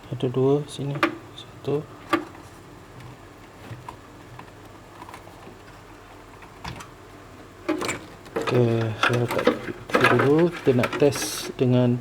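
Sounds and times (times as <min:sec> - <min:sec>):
handling noise: 0:02.0 - 0:11.6.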